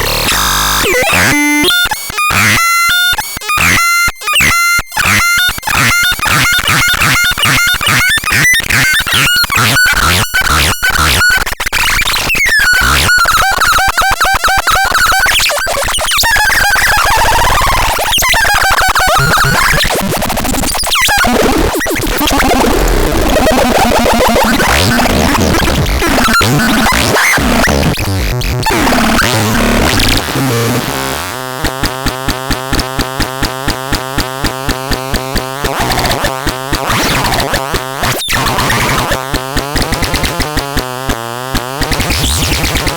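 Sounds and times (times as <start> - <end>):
pulsing electronic buzz: 0.0 - 2.5
toy electronic sound effects: 0.0 - 2.5, 17.5 - 27.9
high electronic beep: 0.3 - 1.9.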